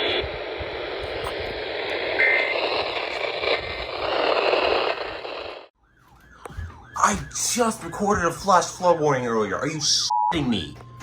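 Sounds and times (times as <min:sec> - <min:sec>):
radio static hiss: 0:00.0 - 0:05.7.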